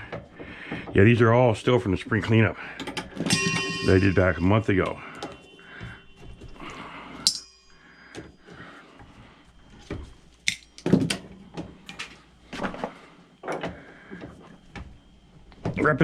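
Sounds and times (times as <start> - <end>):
metal bowl ringing: 3.2 - 6.2, 6.9 - 8.1.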